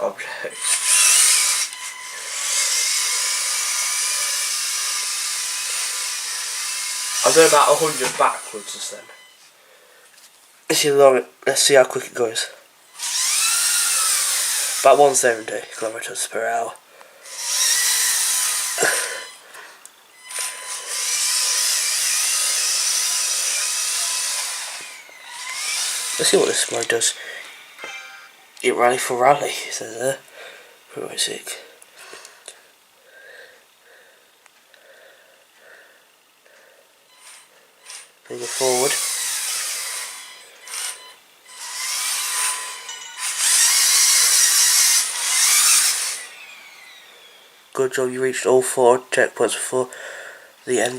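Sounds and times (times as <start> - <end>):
electric motors and gears whirring: 0.0 - 9.5, 12.8 - 16.2, 17.2 - 29.4, 37.0 - 47.8.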